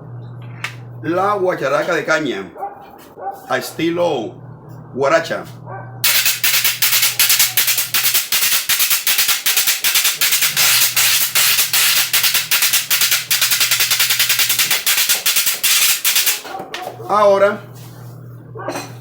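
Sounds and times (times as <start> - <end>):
cane scraper scraped rhythmically: 6.0 - 16.6.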